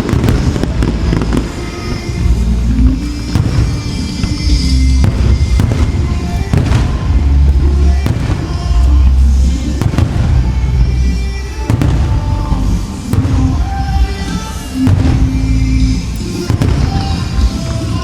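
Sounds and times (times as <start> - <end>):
fireworks bursting: 0.0 - 18.0
loud music with heavy bass: 0.0 - 18.0.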